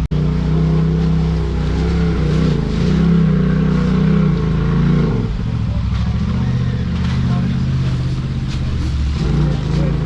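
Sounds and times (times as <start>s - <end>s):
vehicle engine revving: 0.0s - 10.0s.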